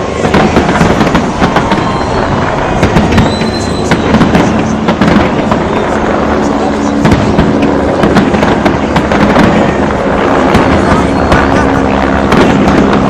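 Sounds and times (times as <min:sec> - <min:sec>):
fireworks bangs and crackling: 0:00.0 - 0:13.0
low rumble: 0:00.0 - 0:13.0
faint whistles: 0:03.1 - 0:04.3.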